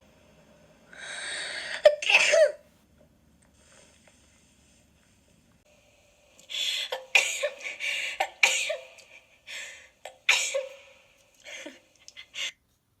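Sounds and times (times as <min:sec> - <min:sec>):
person sneezing: 0:01.8 - 0:02.6.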